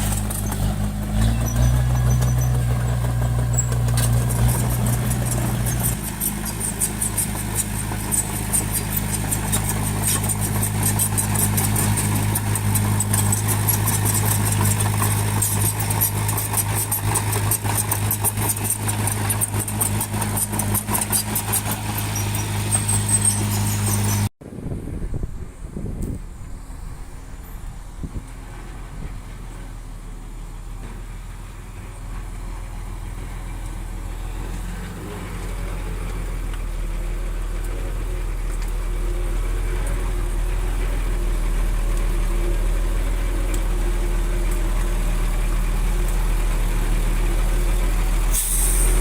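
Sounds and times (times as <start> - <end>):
bulldozer diesel engine running: 0.0 - 49.0.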